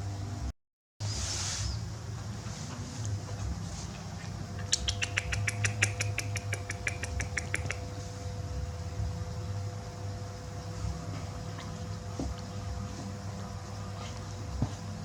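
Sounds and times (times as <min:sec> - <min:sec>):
animal chirping rapidly: 0:04.6 - 0:08.0.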